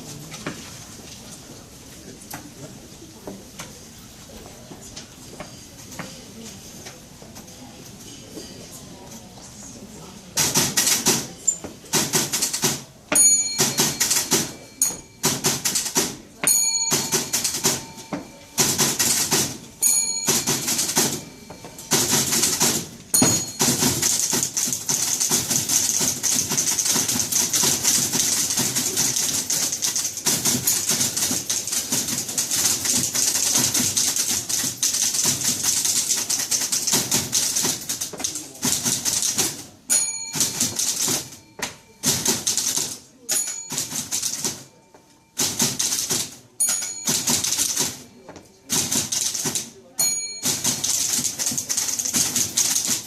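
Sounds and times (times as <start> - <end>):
typewriter key clatter: 10.4 - 39.7, 40.3 - 44.7, 45.4 - 48.1, 48.7 - 49.8, 50.4 - 53.0
typewriter carriage bell dinging: 10.4 - 53.0.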